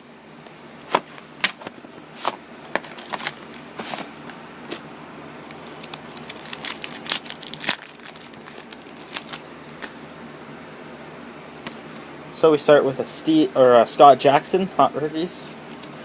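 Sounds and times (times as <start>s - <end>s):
wrapper tearing and crinkling: 5.4s - 9.9s.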